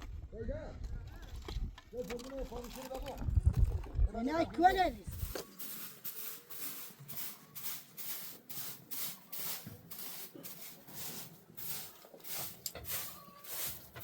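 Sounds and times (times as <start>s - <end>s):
brushing strokes on ground: 4.7s - 14.0s.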